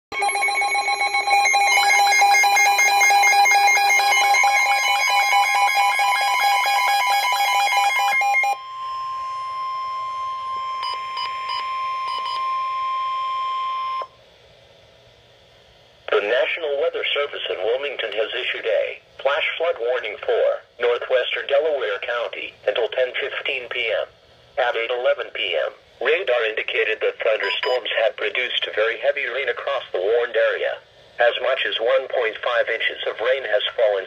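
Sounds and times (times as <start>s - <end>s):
steady alert tone: 27.4s - 27.8s
chattering digital data tones: 27.4s - 27.9s.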